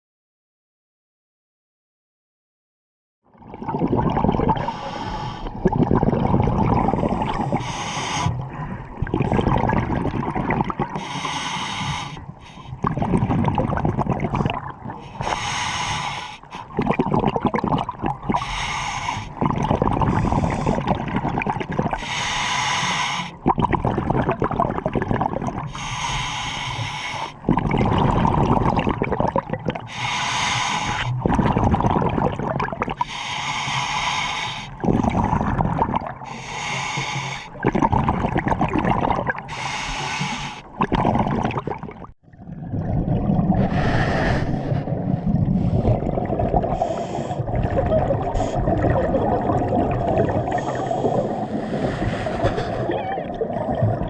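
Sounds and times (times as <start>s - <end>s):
gurgling exhaled bubbles: 3.3s - 15.8s, 16.4s - 22.4s, 23.3s - 25.9s, 27.3s - 33.2s, 34.7s - 54.0s
regulator inhale hiss: 4.6s - 5.6s, 7.0s - 8.6s, 11.0s - 12.8s, 15.1s - 16.7s, 18.4s - 19.4s, 22.0s - 23.4s, 25.7s - 27.4s, 29.9s - 31.2s, 33.0s - 34.8s, 36.3s - 37.6s, 39.5s - 40.7s, 43.7s - 44.9s, 46.8s - 47.4s.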